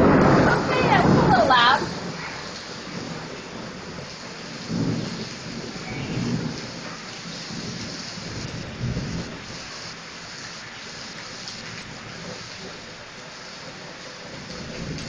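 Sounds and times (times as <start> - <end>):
thunder rumbling: 0.0 - 10.2, 11.6 - 15.0
steady rain: 0.0 - 15.0.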